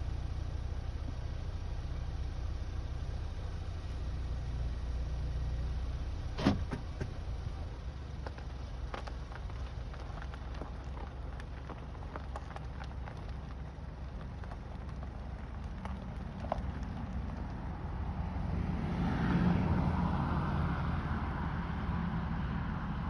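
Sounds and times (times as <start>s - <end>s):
steady low rumble: 0.0s - 23.0s.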